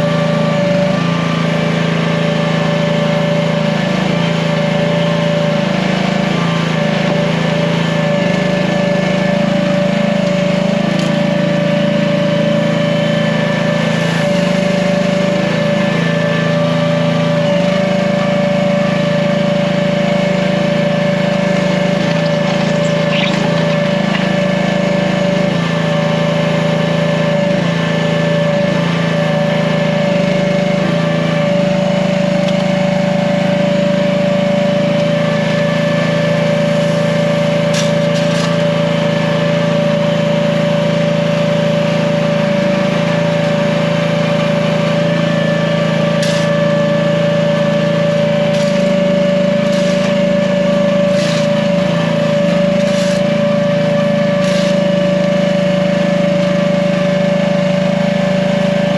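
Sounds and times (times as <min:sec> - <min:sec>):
excavator engine running: 0:19.7 - 0:26.6.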